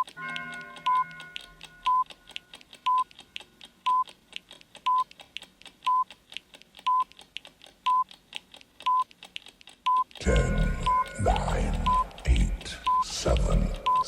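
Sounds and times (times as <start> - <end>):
short electronic beeps: 0.0 - 2.1, 2.9 - 3.1, 9.9 - 11.2, 11.8 - 12.2, 12.9 - 13.1
clock-like ticks: 0.0 - 14.0
chord-like chime: 0.2 - 1.9.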